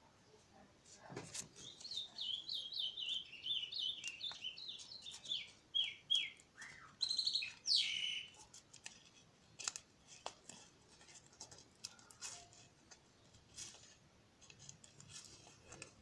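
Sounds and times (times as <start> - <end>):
small bird chirping: 1.5 - 8.6
louder bird calls: 1.6 - 8.4.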